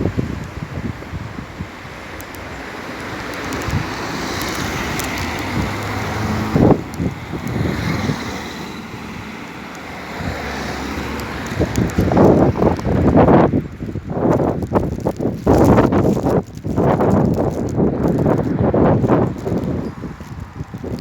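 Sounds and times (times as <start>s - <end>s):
wind buffeting microphone: 0.0s - 21.0s
motor vehicle passing: 2.5s - 21.0s.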